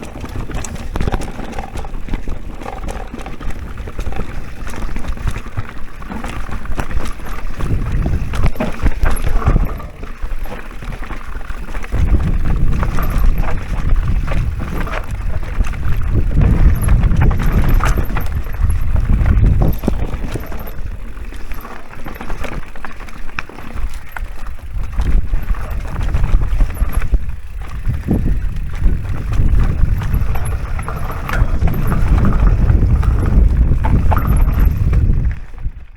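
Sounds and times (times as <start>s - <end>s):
bike rattling and knocking: 0.0s - 35.9s
bike tyres rolling on dirt: 0.0s - 35.9s
wind buffeting microphone: 6.5s - 10.2s, 11.9s - 21.4s, 23.8s - 35.9s.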